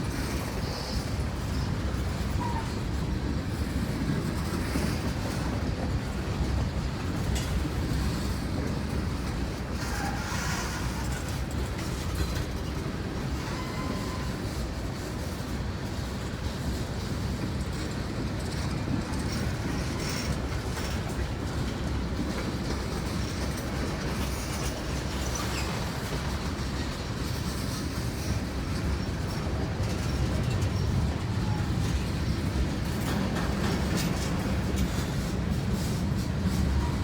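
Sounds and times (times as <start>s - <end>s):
freight train wheels rumbling on rails: 0.0s - 37.0s.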